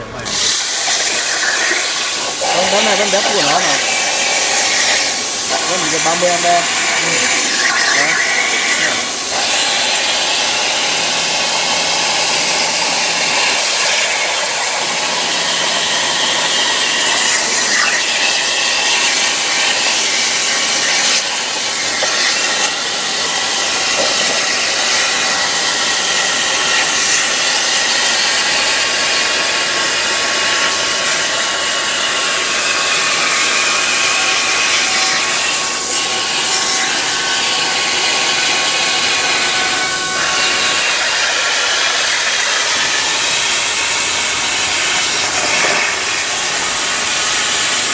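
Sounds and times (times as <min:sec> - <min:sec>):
plasma cutter hissing: 0:00.2 - 0:37.0, 0:39.2 - 0:42.9, 0:44.1 - 0:47.6.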